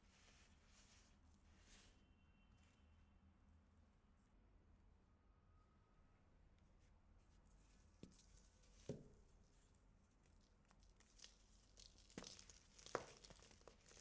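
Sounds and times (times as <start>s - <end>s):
baking soda crunching: 10.2s - 14.0s.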